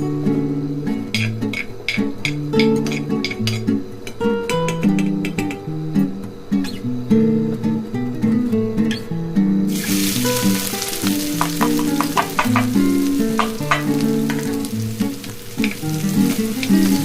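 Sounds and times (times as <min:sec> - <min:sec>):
acoustic guitar music: 0:00.0 - 0:17.0
spoon clicking against pan: 0:01.1 - 0:03.7, 0:11.4 - 0:14.7
food sizzling in hot oil: 0:09.7 - 0:17.0.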